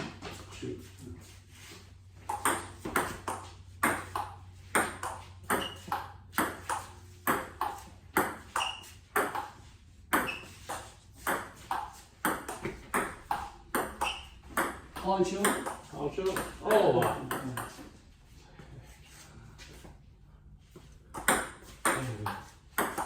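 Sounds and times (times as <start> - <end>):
table tennis ball hits: 2.2 - 17.8, 21.1 - 23.0.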